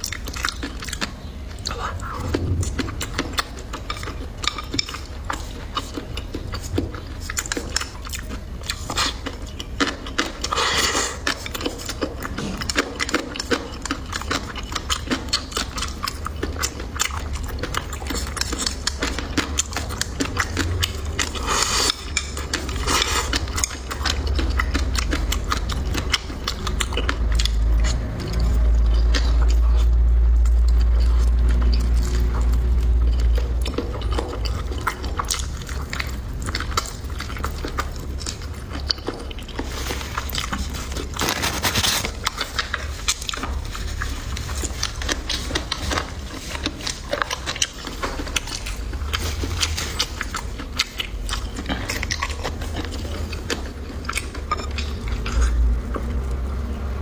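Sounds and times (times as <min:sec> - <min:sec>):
chewing and biting: 0:00.0 - 0:57.0
deep low rumble: 0:01.4 - 0:04.9.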